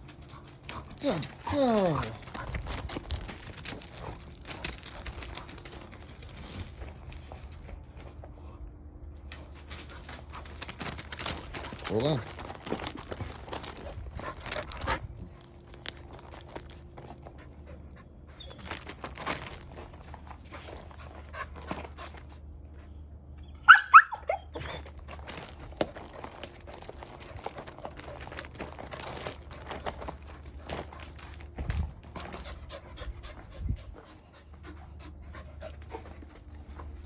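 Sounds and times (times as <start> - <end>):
light clicks and rustles: 0.0 - 23.0, 24.6 - 37.0
dog barking: 23.7 - 24.4.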